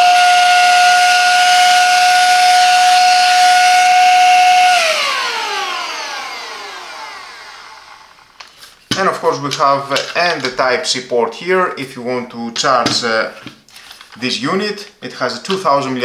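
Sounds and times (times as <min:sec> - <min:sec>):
handheld vacuum cleaner motor: 0:00.0 - 0:08.5.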